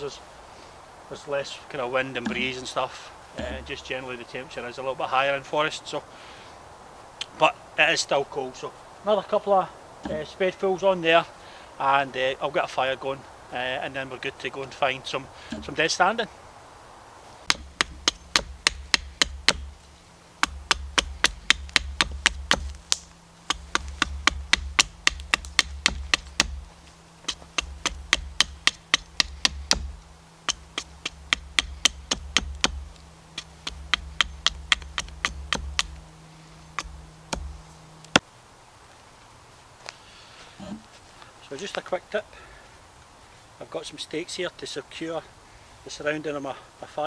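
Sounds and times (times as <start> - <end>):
stakes hammered into ground: 2.2 - 2.6, 3.4 - 3.8, 10.0 - 10.4, 15.5 - 15.8, 17.4 - 19.8, 20.4 - 36.1, 36.7 - 38.2.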